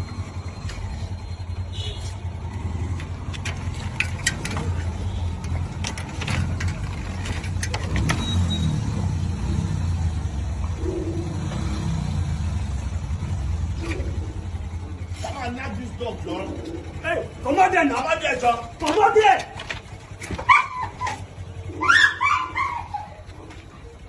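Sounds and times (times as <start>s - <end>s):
engine humming: 0.0s - 24.0s
clicks and knocks: 3.0s - 8.3s.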